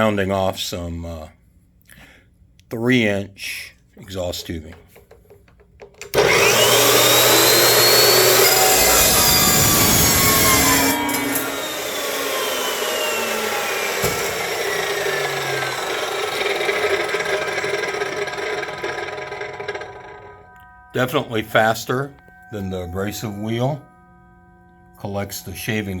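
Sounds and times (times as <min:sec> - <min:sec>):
chop saw cutting steel tubing: 0:06.1 - 0:20.4.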